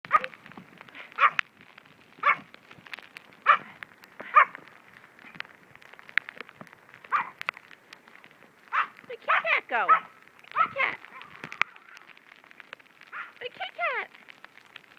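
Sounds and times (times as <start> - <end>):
dog barking: 0.1 - 0.4, 1.1 - 1.4, 2.2 - 2.5, 3.4 - 3.7, 4.3 - 4.6, 7.1 - 7.4, 8.7 - 11.3, 13.1 - 13.4
faint clicks: 0.1 - 14.9.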